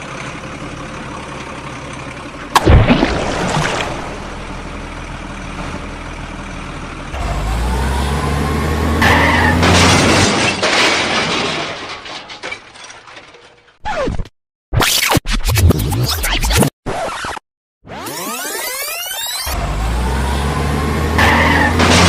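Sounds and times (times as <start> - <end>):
truck engine running: 0.0 - 10.4, 19.5 - 22.0.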